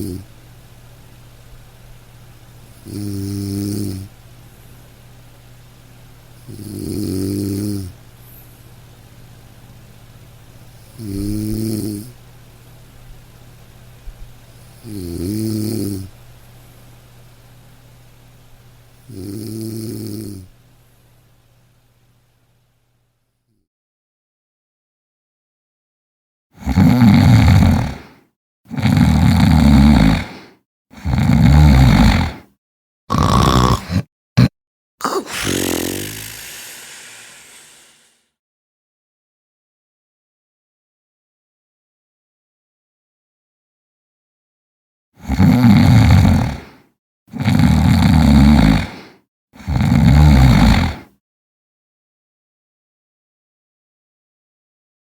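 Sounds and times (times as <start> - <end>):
person snoring loudly: 0.0 - 0.3, 2.8 - 4.1, 6.5 - 7.9, 11.0 - 12.2, 14.8 - 16.1, 26.6 - 32.5, 33.1 - 34.1, 35.0 - 38.2, 45.2 - 51.1.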